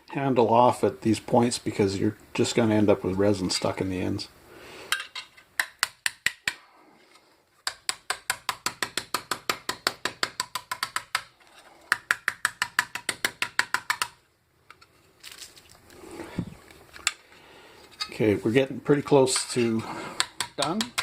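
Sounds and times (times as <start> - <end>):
hammer tapping on metal: 20.2 - 21.0.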